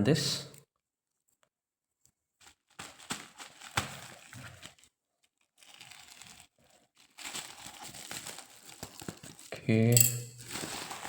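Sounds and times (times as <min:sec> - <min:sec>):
packaging tearing and crinkling: 0:02.4 - 0:09.6, 0:10.4 - 0:11.0.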